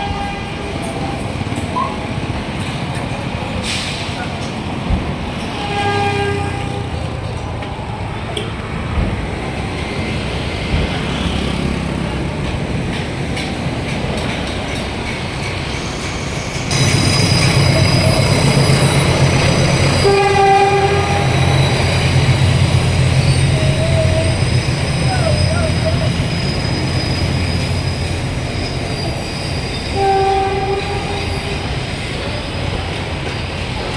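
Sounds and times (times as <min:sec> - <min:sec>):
traffic noise: 0:00.0 - 0:33.9
horn blast: 0:19.9 - 0:21.8.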